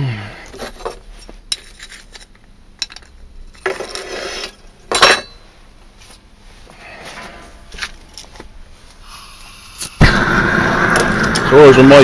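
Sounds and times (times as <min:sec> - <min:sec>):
metal tools clinking and clattering: 0:04.9 - 0:05.4.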